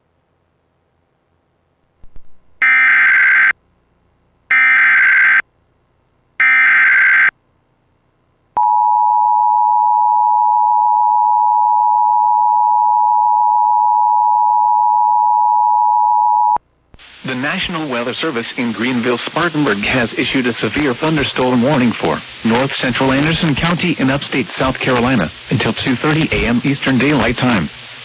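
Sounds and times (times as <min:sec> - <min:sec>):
digital data screech bursts: 0:22.5 - 0:27.6.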